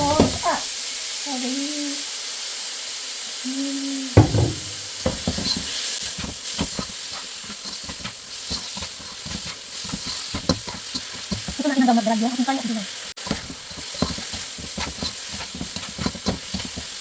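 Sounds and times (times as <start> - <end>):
meat sizzling in a pan: 0.0 - 17.0
spatula scraping a pan: 4.2 - 17.0.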